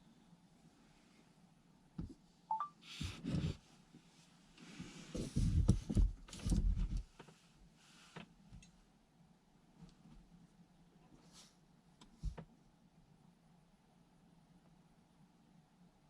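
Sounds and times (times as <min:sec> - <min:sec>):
two-note electronic beep: 0:02.5 - 0:02.7.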